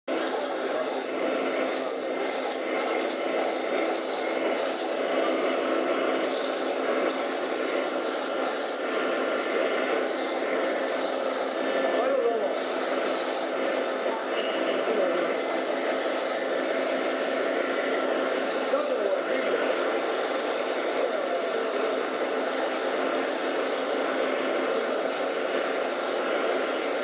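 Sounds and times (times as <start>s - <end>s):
lathe tool scraping metal: 6.2s - 11.7s.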